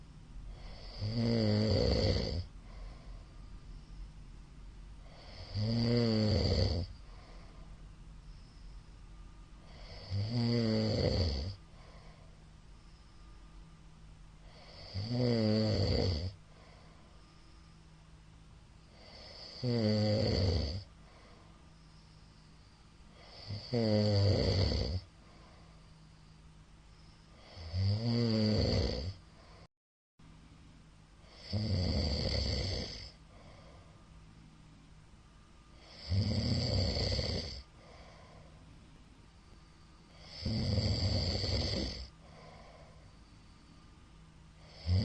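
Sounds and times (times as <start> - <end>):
quiet breathing: 0.0 - 28.1, 29.0 - 45.0
man snoring loudly: 0.5 - 2.5, 5.0 - 7.3, 9.7 - 11.6, 14.5 - 16.4, 18.9 - 20.9, 23.1 - 25.1, 27.4 - 29.2, 31.3 - 33.2, 35.8 - 38.2, 40.1 - 42.8, 44.6 - 45.0.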